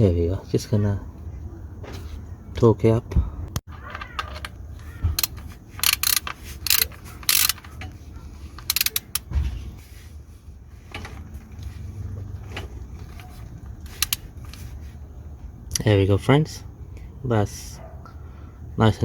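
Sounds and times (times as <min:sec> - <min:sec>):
torque wrench ratchet clicking: 0:05.1 - 0:07.7, 0:08.6 - 0:09.3, 0:13.8 - 0:14.6.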